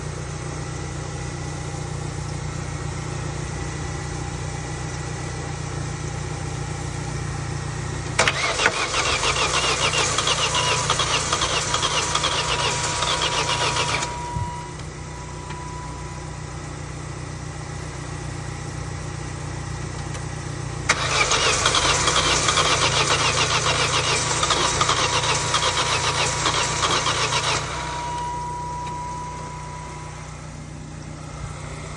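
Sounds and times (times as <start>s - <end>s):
engine cranking on starter motor: 8.1s - 15.8s, 20.0s - 31.9s
steady low hum: 12.7s - 20.9s, 26.4s - 31.9s.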